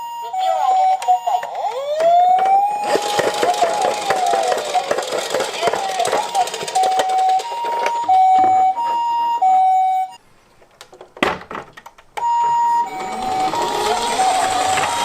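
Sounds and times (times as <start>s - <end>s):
toy siren two-tone wail: 0.0s - 10.2s, 12.3s - 15.0s.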